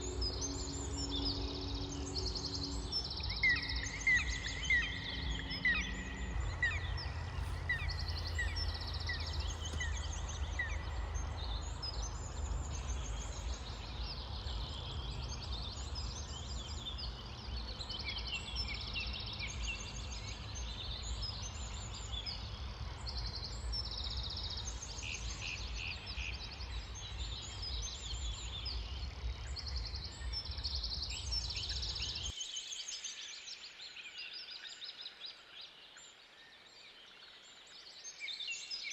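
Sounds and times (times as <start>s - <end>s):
steady low rumble: 0.0s - 17.8s
small birds singing and chirping: 0.0s - 38.9s.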